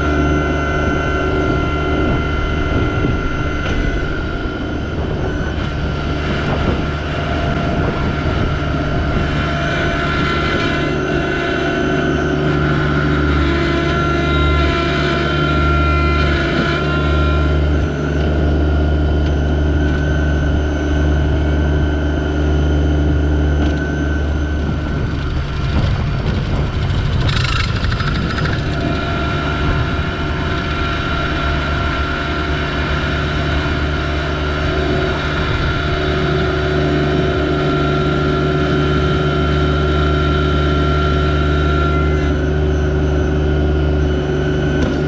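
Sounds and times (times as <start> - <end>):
high whine: 0.0 - 45.0
tractor diesel engine running: 0.0 - 45.0
harsh scrape or clatter: 25.5 - 30.8.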